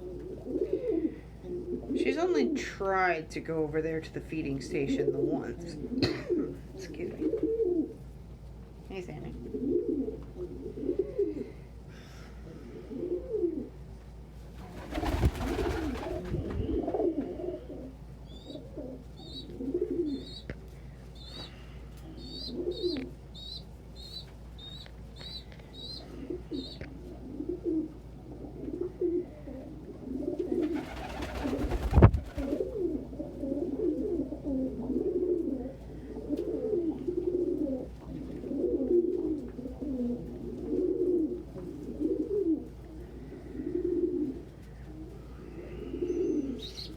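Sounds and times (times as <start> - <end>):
pigeons cooing: 0.0 - 2.7, 4.7 - 8.1, 9.4 - 11.8, 12.4 - 14.0, 14.6 - 46.9
loud rustling bursts: 14.7 - 16.5, 30.8 - 32.7.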